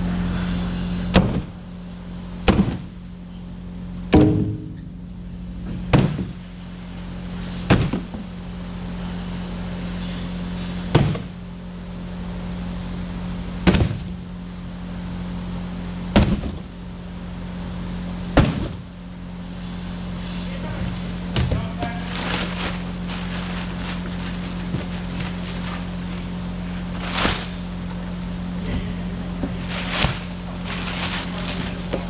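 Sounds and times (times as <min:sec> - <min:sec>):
steady low hum: 0:00.0 - 0:32.0
sharp ringing knocks: 0:04.1 - 0:04.9.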